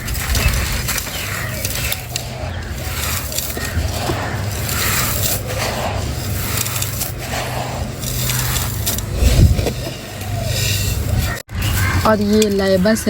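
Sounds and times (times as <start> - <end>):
brittle material crunching by hand: 0.0 - 9.8.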